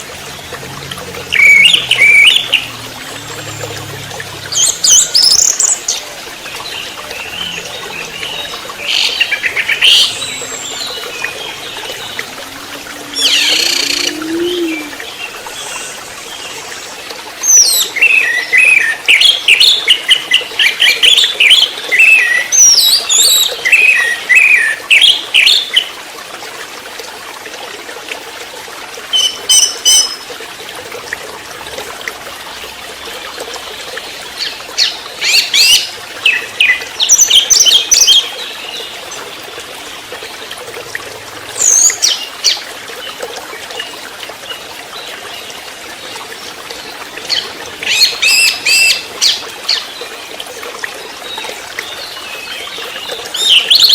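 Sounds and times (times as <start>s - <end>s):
thrush singing: 0.0s - 16.1s
faint low cooing: 12.2s - 15.2s.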